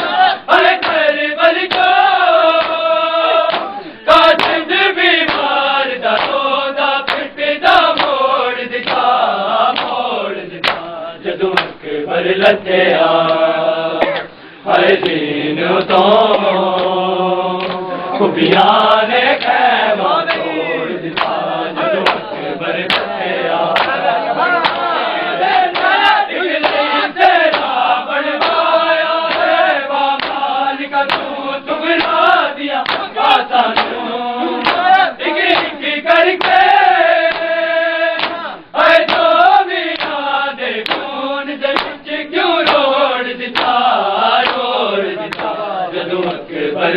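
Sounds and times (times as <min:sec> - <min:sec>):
hands slapping on chests: 0:00.0 - 0:01.1, 0:01.7 - 0:02.8, 0:03.4 - 0:03.8, 0:04.4 - 0:05.5, 0:06.1 - 0:06.4, 0:07.0 - 0:07.3, 0:07.9 - 0:08.2, 0:08.8 - 0:09.1, 0:09.7 - 0:10.0, 0:10.6 - 0:10.9, 0:11.6 - 0:11.8, 0:15.0 - 0:15.2, 0:17.6 - 0:17.8, 0:19.4 - 0:19.6, 0:21.2 - 0:21.4, 0:22.0 - 0:22.3, 0:22.9 - 0:23.2, 0:23.8 - 0:24.9, 0:25.7 - 0:27.8, 0:28.4 - 0:28.7, 0:29.3 - 0:30.5, 0:31.1 - 0:31.4, 0:32.0 - 0:32.2, 0:32.8 - 0:33.1, 0:33.8 - 0:35.8, 0:36.4 - 0:36.7, 0:37.3 - 0:37.5, 0:38.2 - 0:38.5, 0:39.1 - 0:40.2, 0:40.8 - 0:41.1, 0:41.7 - 0:42.0, 0:42.6 - 0:42.9, 0:43.6 - 0:43.8, 0:44.4 - 0:44.7, 0:45.3 - 0:45.6
group of voices chanting: 0:00.0 - 0:46.9.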